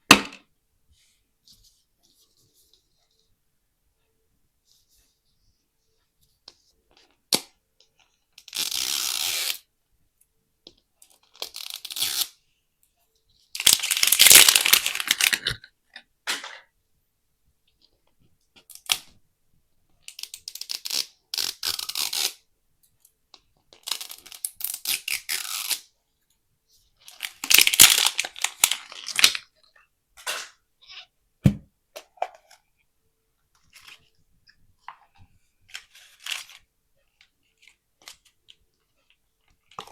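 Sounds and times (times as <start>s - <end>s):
plastic packaging tearing: 13.6s - 15.6s, 27.1s - 29.5s.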